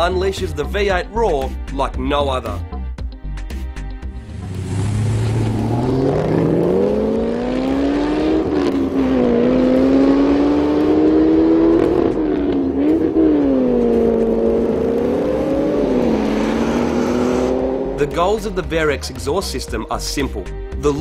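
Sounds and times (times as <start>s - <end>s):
car engine revving: 4.0s - 18.5s.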